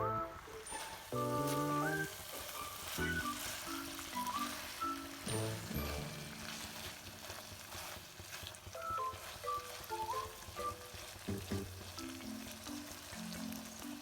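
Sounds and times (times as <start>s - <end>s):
food sizzling in a pan: 0.0s - 14.0s
light background music: 0.0s - 14.0s.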